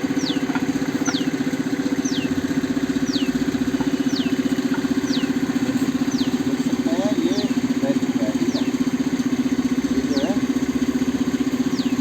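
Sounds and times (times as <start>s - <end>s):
engine idling: 0.0s - 12.0s
high falling chirp: 3.0s - 6.5s.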